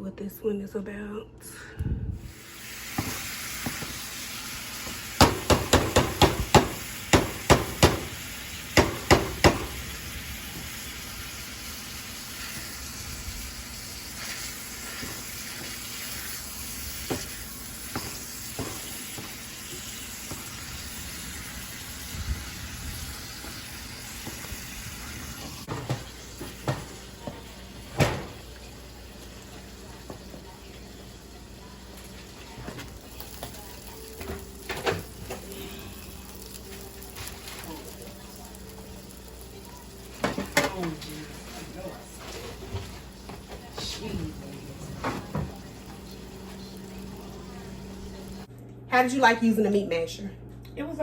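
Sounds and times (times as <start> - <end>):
meat sizzling: 2.3 - 48.5
meat masher knocking on pan: 4.8 - 9.9, 17.0 - 20.5.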